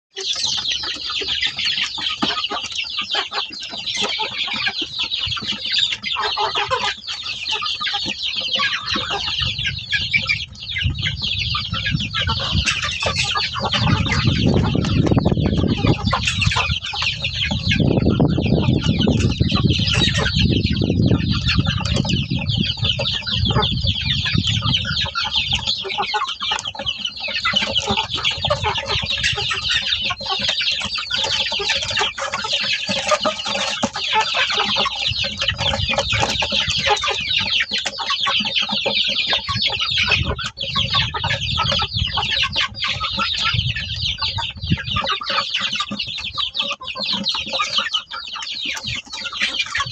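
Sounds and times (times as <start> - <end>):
birds chattering: 0.1 - 49.9.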